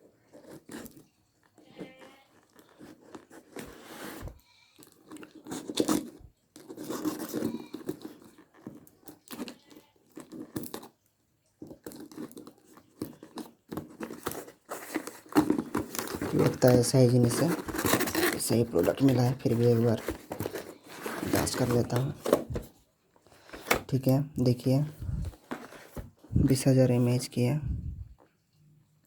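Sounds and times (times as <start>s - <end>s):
packaging tearing and crinkling: 4.8s - 11.0s, 11.7s - 22.6s.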